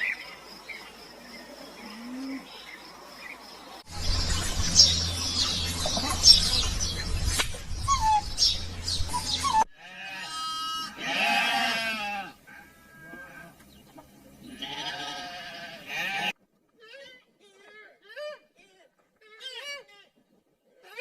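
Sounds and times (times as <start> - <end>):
small birds chirping: 0.0 - 9.7
steady low hum: 3.9 - 9.7
animal bleating: 9.7 - 13.6, 14.4 - 17.1.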